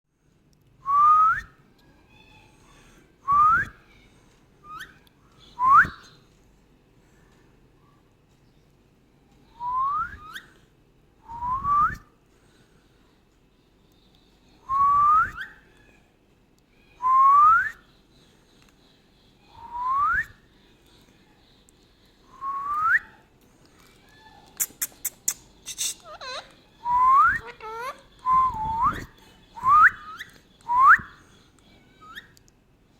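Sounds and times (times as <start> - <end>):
parakeet sharp calls and chirps: 24.6 - 28.2.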